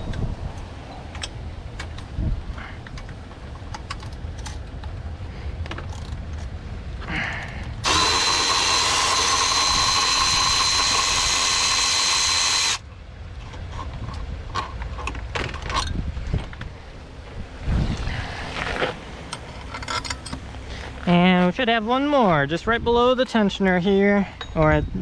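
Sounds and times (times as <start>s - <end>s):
power drill whine: 7.8s - 12.8s
tool handling clicks: 19.3s - 20.5s.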